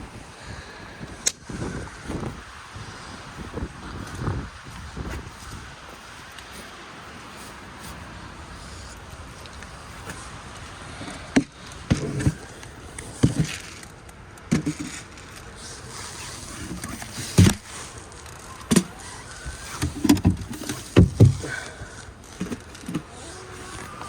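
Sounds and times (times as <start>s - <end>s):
strong gusty wind on microphone: 0.0s - 13.5s.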